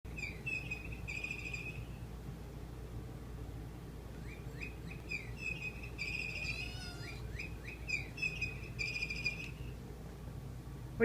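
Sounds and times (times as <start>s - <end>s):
bird warbling trill: 0.1s - 2.0s, 4.2s - 9.8s
buzzy bird calls: 0.1s - 2.0s, 4.2s - 9.8s
bird chirping: 0.1s - 2.1s, 4.1s - 9.8s.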